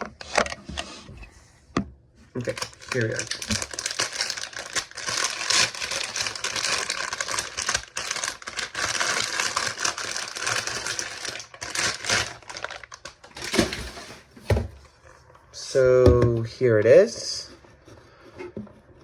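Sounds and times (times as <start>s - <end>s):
packaging rustling and crinkling: 2.4s - 14.8s.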